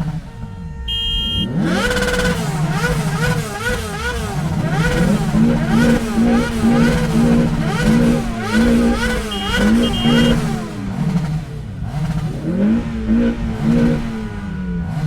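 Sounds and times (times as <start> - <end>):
car horn toot: 0.0 - 10.8
car engines revving: 0.0 - 15.0.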